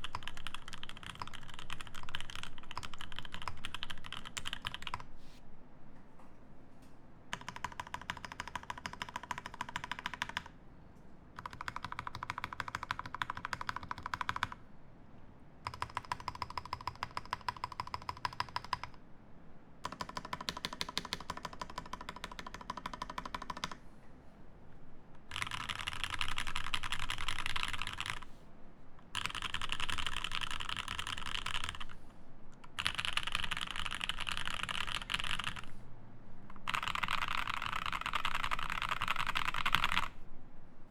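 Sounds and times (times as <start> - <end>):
fast mechanical keyboard typing: 0.0 - 5.1, 7.3 - 10.6, 11.4 - 14.6, 15.6 - 19.0, 19.8 - 23.8, 25.3 - 28.3, 29.1 - 32.0, 32.6 - 35.8, 36.6 - 40.1.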